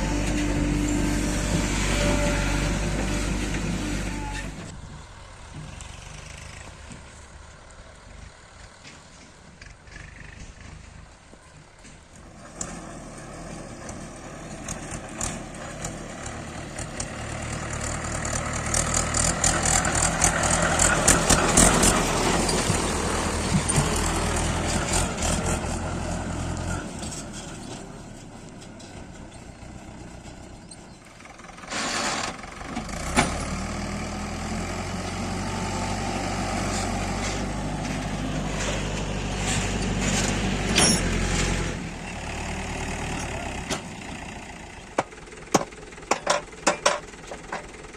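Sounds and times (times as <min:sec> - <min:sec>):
heavy diesel machinery working: 0:00.0 - 0:47.9
engine clattering and knocking: 0:14.6 - 0:25.8, 0:43.6 - 0:47.9.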